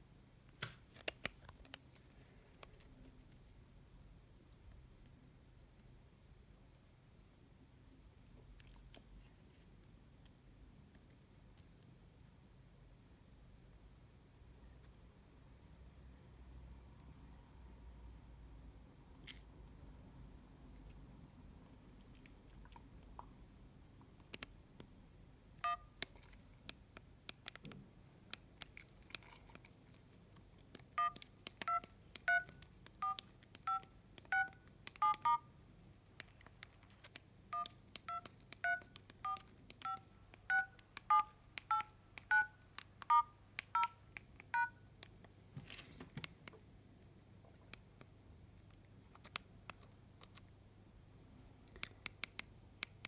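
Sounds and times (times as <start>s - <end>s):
dual-tone keypad beeps: 25.6s - 25.9s, 31.0s - 35.5s, 37.6s - 44.0s, 44.6s - 44.8s.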